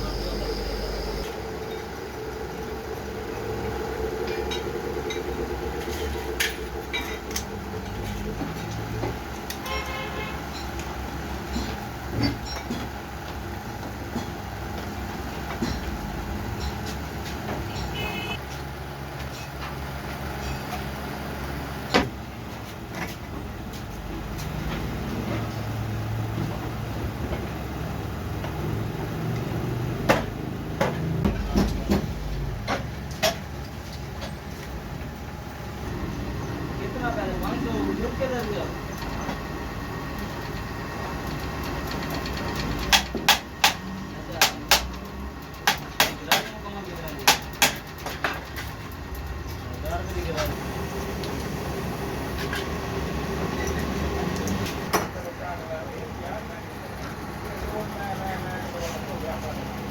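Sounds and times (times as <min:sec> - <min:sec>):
truck engine rumbling: 0:00.0 - 0:09.7, 0:10.4 - 0:59.9
sharp clicks and knocks: 0:41.2 - 0:49.8.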